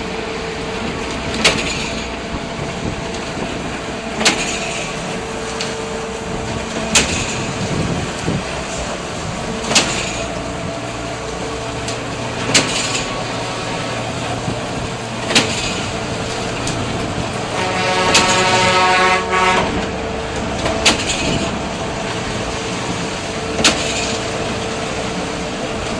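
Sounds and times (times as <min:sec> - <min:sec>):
pump engine drone: 0:00.0 - 0:25.9
horn-like tone: 0:17.5 - 0:19.8.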